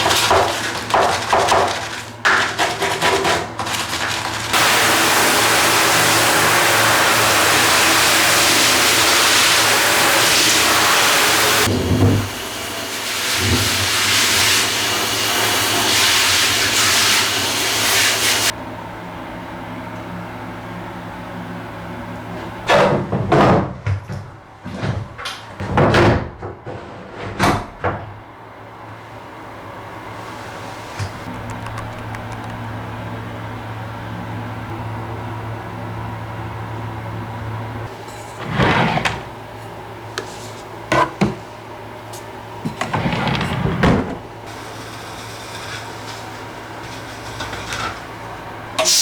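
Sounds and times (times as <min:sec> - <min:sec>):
knocks and clatters of handling: 0:00.0 - 0:04.6
appliance humming: 0:00.0 - 0:49.0
sharp clicks and knocks: 0:31.3 - 0:32.6.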